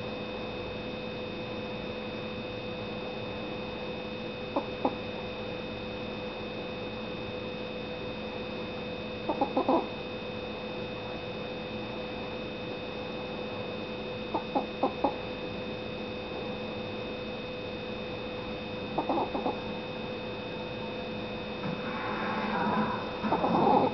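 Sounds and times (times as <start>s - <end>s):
faint steady hum: 0.0s - 23.9s
loud noisy sound: 21.6s - 23.9s
dog snoring: 23.4s - 23.9s.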